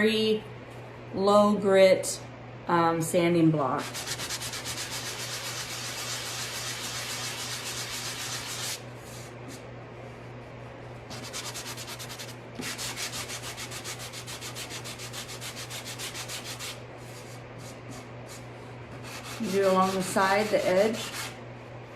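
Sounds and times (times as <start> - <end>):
sanding block rubbing on wood: 3.8 - 8.8, 11.1 - 16.8, 19.0 - 21.4.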